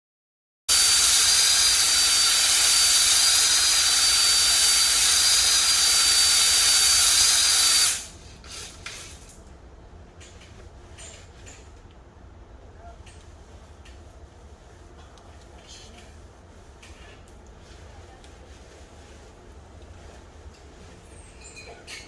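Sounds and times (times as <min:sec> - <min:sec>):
pressurised jet hissing with whistle: 0:00.7 - 0:08.1.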